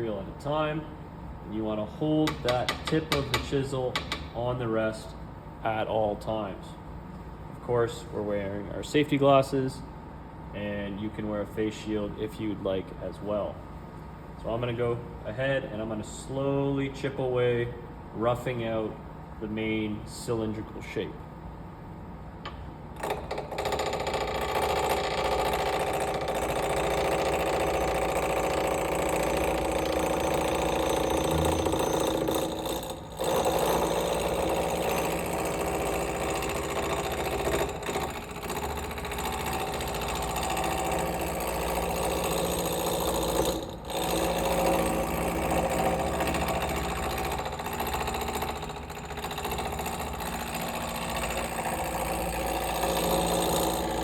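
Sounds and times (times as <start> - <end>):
wood lathe gouge chattering: 23.0 - 54.0.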